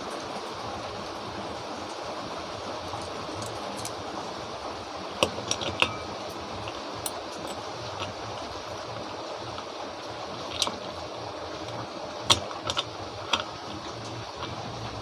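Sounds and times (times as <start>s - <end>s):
steady background hiss: 0.0s - 15.0s
light metal clinks: 5.2s - 8.3s.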